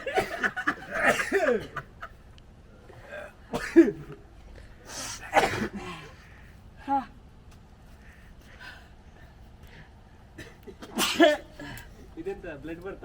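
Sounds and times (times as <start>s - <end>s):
people coughing: 0.0s - 2.2s, 2.9s - 4.2s, 5.0s - 6.3s, 10.3s - 11.9s.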